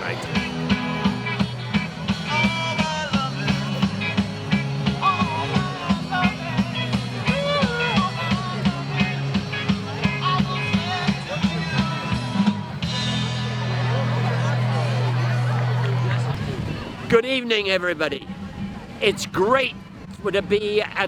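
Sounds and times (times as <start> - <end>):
rock music: 0.0 - 16.4.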